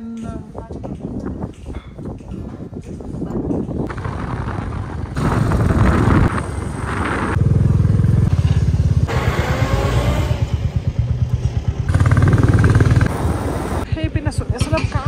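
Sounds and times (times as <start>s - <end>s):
motorcycle engine running: 3.8s - 15.0s.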